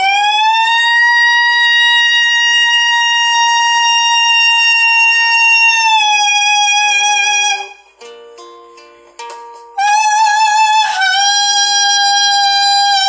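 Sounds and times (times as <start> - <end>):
woman singing a long high note: 0.0 - 7.8, 9.8 - 13.0
faint backing track: 5.7 - 13.0.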